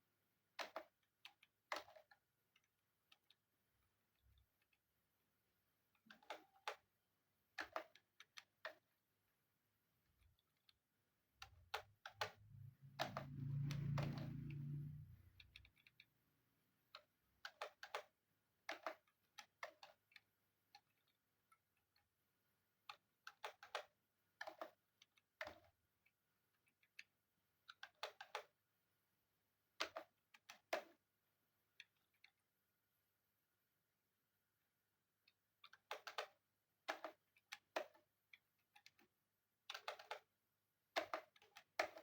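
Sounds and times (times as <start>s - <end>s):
hands clicking and tapping plastic: 0.5s - 3.5s, 5.9s - 9.0s, 10.2s - 14.3s, 16.9s - 22.1s, 22.8s - 25.8s, 26.6s - 28.6s, 29.8s - 31.0s, 35.2s - 40.3s, 40.9s - 42.0s.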